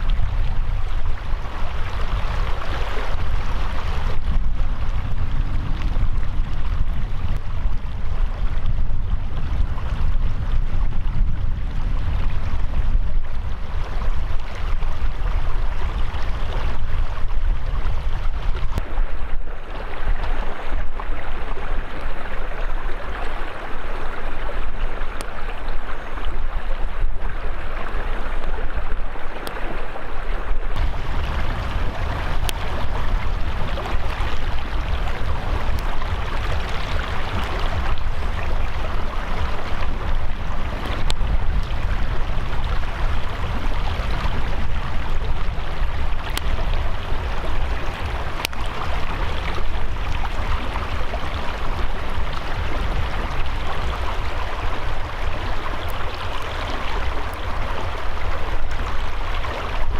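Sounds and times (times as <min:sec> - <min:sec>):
mountain stream rushing: 0:00.0 - 0:59.9
heavy low rumble: 0:30.7 - 0:51.5.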